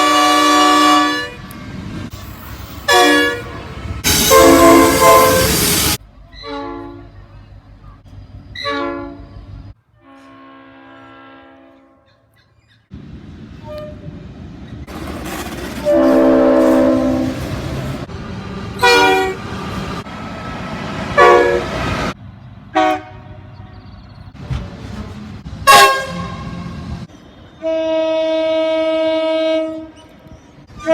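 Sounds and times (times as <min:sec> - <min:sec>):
train horn blasts: 0:00.0 - 0:01.6, 0:02.8 - 0:07.2, 0:08.6 - 0:09.3, 0:10.0 - 0:12.1, 0:13.6 - 0:14.1, 0:15.8 - 0:17.8, 0:18.8 - 0:19.4, 0:21.2 - 0:21.9, 0:22.7 - 0:23.6, 0:25.6 - 0:26.8, 0:27.4 - 0:30.0
moving train rumble: 0:00.0 - 0:10.3, 0:12.2 - 0:30.9.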